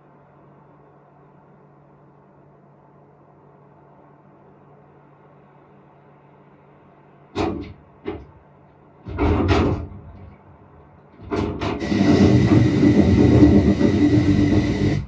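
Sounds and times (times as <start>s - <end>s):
sharp knocks: 7.4s - 8.4s, 9.0s - 10.3s, 11.2s - 13.9s
loud sustained rush: 11.8s - 15.0s.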